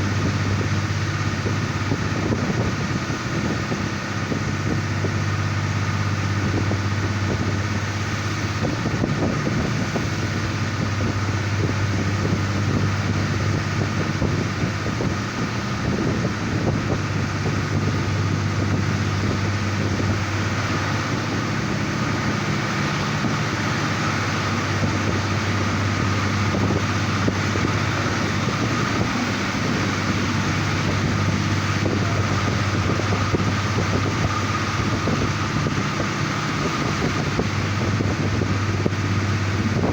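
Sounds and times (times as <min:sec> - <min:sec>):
diesel engine drone: 0:00.0 - 0:39.9
wheels running on track: 0:06.1 - 0:39.9
wind rushing past: 0:08.9 - 0:39.9.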